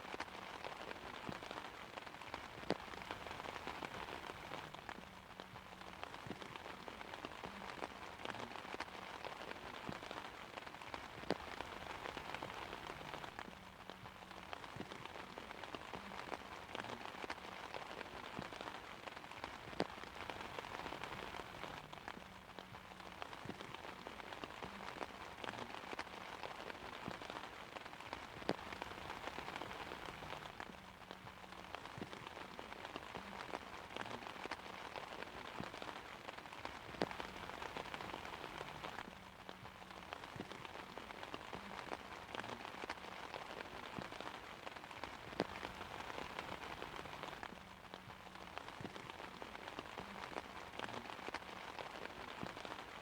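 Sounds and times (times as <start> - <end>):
rain pattering on an umbrella: 0.0 - 53.0.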